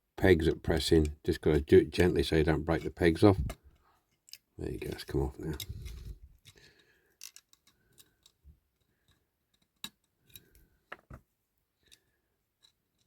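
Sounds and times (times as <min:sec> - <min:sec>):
plastic parts clicking: 0:03.4 - 0:11.2.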